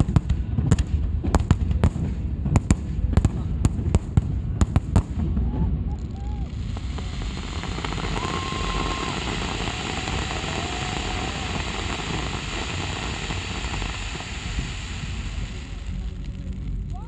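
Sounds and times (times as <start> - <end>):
fireworks crackling: 0.0 - 17.0
low rumble: 0.0 - 17.0
firework whistle: 5.1 - 17.0.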